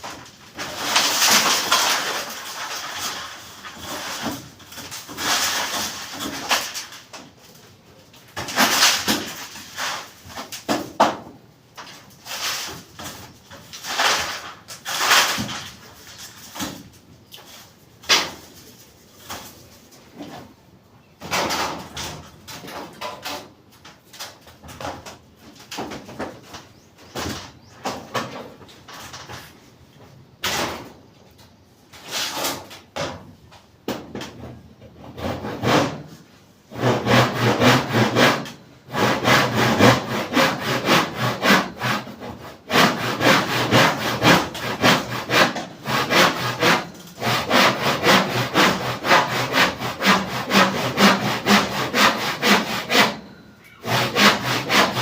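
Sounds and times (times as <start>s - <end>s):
hand saw cutting wood: 35.0s - 55.0s.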